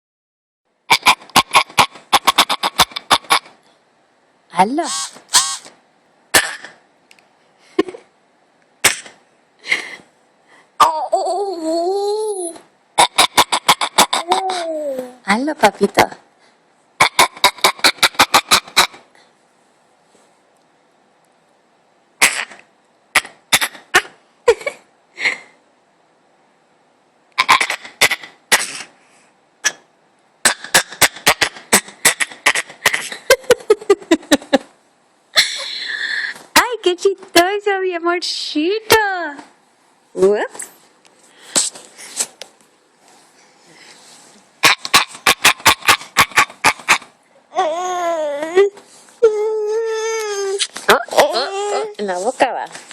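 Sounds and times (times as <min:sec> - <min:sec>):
baby mouth pops: 0:08.8 - 0:09.2
baby cooing: 0:14.1 - 0:15.2, 0:47.5 - 0:52.0.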